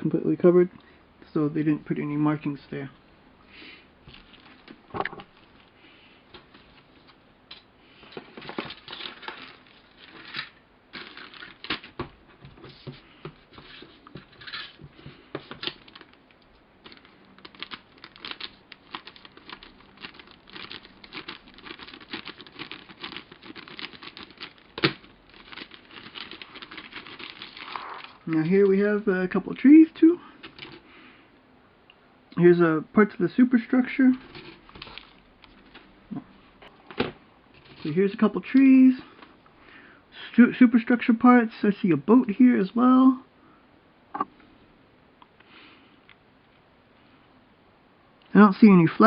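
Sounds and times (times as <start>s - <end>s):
plastic bags rustling and crinkling: 7.9s - 29.1s, 34.2s - 36.2s.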